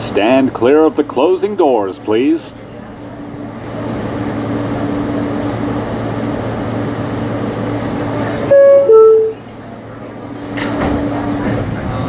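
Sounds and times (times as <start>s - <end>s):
subway car interior hum: 0.0s - 12.0s
two-tone door chime: 8.5s - 9.4s.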